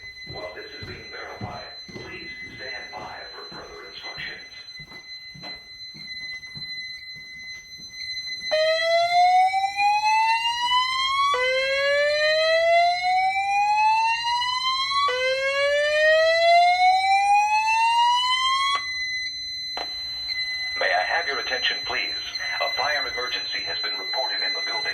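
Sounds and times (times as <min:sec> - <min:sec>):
rising whoop alarm tone: 0:08.4 - 0:19.5.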